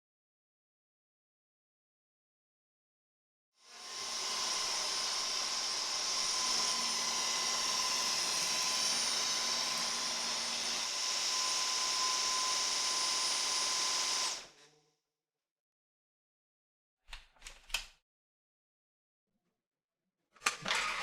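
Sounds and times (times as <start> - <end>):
stick vacuum whirring: 3.8 - 14.5.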